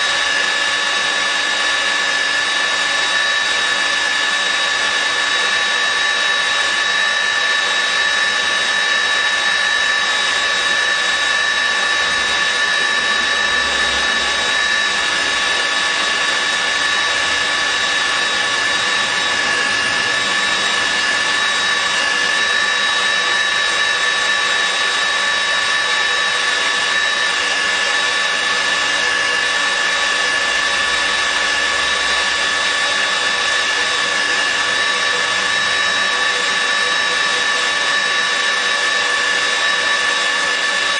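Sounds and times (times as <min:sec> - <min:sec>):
drilling machine motor whine: 0:00.0 - 0:40.9.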